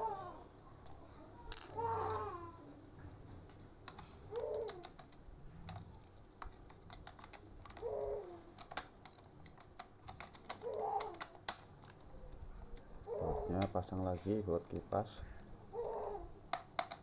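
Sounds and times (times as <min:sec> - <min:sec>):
short falling calls: 0:01.7 - 0:02.6
tools clicking on laptop parts: 0:03.5 - 0:17.0.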